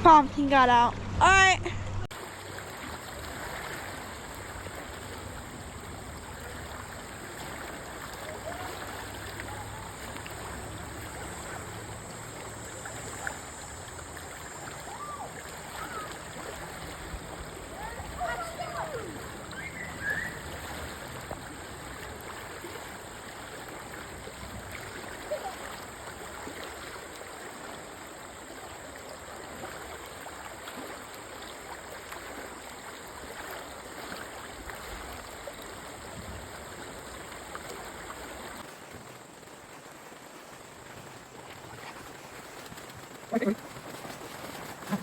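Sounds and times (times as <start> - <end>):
river water rushing: 0.0 - 45.0.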